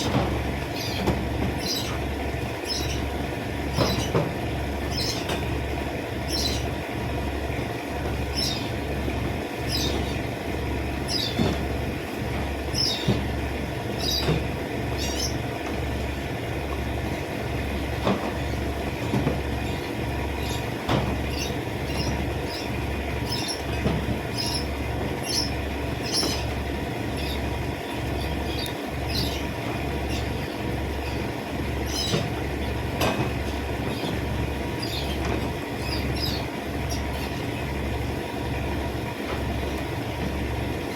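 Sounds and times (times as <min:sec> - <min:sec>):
low pulsing machine hum: 0:00.0 - 0:40.9
bird chirps: 0:28.2 - 0:29.5, 0:35.8 - 0:37.1.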